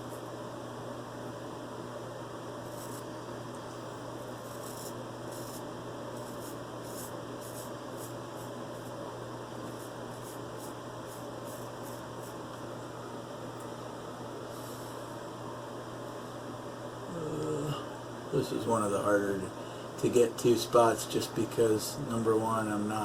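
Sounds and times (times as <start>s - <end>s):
steady background hum: 0.0s - 23.0s
straight razor scraping whiskers: 2.7s - 3.1s, 4.4s - 8.9s.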